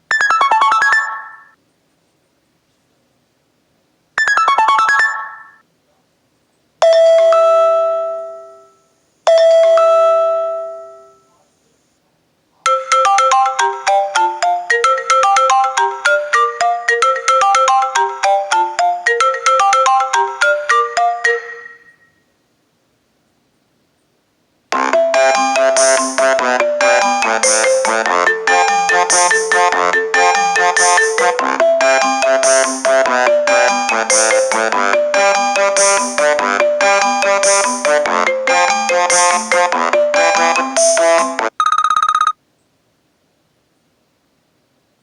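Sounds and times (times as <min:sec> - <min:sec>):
phone ringtones through speaker: 0:00.1 - 0:01.6, 0:04.2 - 0:05.6, 0:06.8 - 0:11.3, 0:12.7 - 0:22.2, 0:24.8 - 0:42.4
fast bright melody: 0:12.7 - 0:22.0, 0:24.7 - 0:41.5
ringing chimes: 0:12.7 - 0:22.2.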